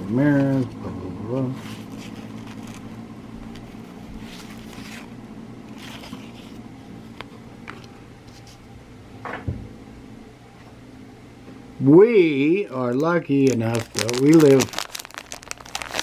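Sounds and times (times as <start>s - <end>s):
steady low hum: 0.0s - 16.0s
cards rustling by hand: 1.5s - 8.6s, 12.7s - 16.0s.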